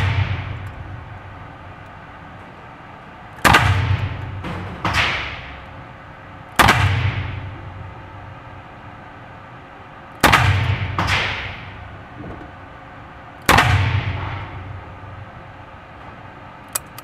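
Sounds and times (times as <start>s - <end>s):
pistol shots echoing: 0.0s - 1.0s, 3.4s - 5.7s, 6.5s - 7.6s, 10.2s - 11.8s, 13.4s - 14.8s.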